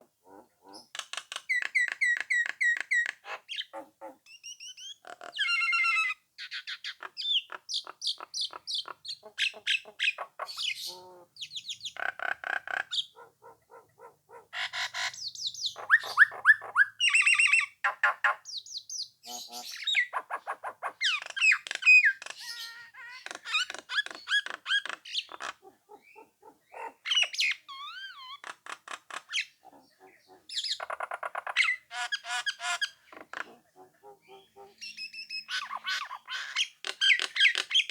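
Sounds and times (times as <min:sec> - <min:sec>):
myna whistles and squawks: 0:14.6 - 0:17.7.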